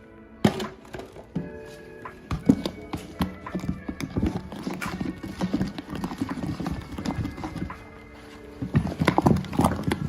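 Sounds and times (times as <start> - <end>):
stirrer knocking against bucket: 2.2 - 10.0.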